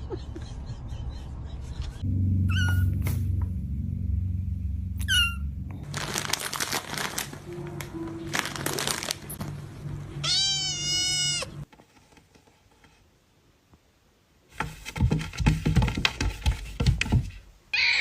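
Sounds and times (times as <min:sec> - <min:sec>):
cat meowing: 0:05.0 - 0:05.4, 0:10.2 - 0:11.6
knocking and clattering: 0:14.6 - 0:17.4.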